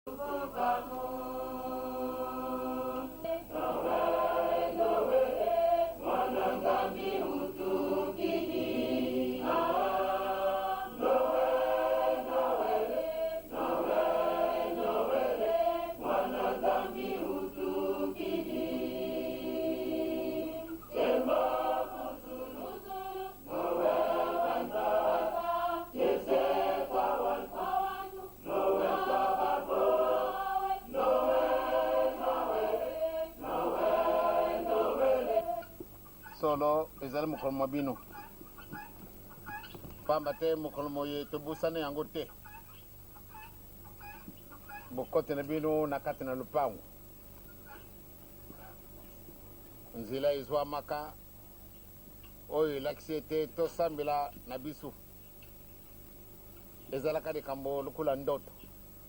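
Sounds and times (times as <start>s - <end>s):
choir singing: 0.1s - 35.8s.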